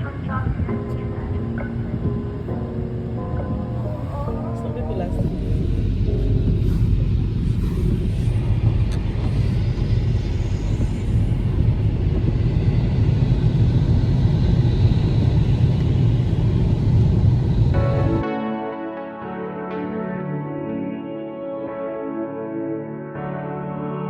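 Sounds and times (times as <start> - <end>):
car engine and road noise: 0.0 - 18.2.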